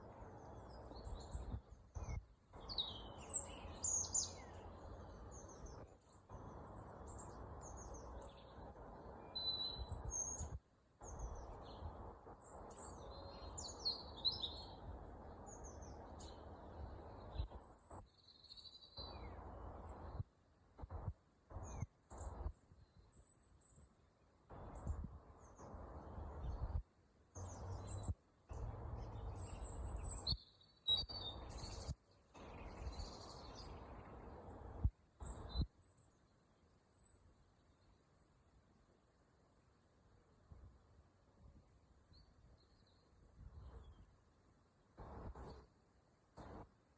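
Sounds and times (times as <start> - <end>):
birds chirping: 0.0 - 20.3, 27.4 - 38.4
low background hiss: 0.0 - 46.9.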